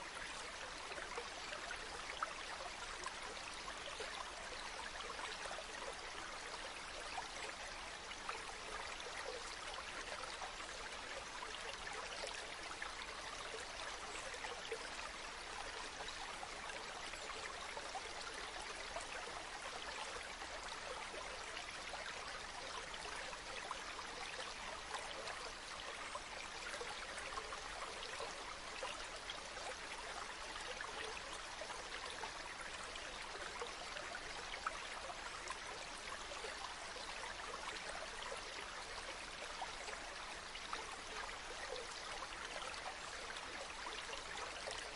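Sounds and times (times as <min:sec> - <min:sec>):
stream flowing with splashes: 0:00.0 - 0:44.9.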